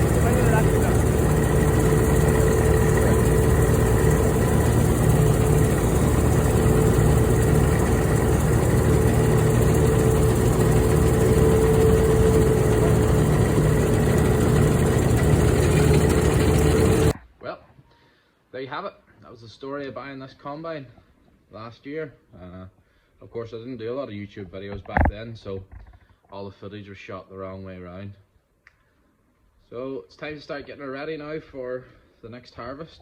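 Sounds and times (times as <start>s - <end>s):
combine harvester engine running: 0.0s - 17.2s.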